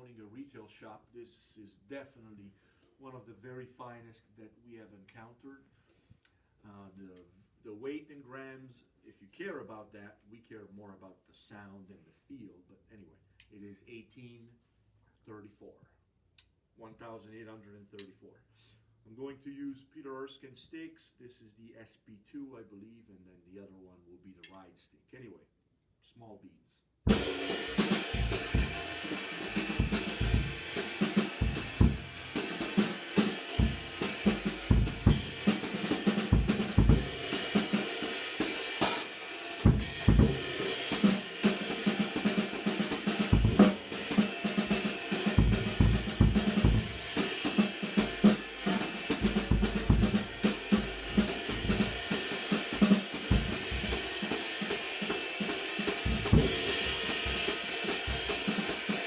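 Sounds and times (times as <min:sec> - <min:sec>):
bass drum hits: 0:27.1 - 0:32.5, 0:33.5 - 0:37.4, 0:39.7 - 0:40.6, 0:43.3 - 0:43.9, 0:44.7 - 0:47.2, 0:48.0 - 0:54.2, 0:56.1 - 0:57.5
ride cymbal wash: 0:27.1 - 0:59.0
snare drum: 0:27.1 - 0:59.0
hi-hat: 0:27.2 - 0:58.9.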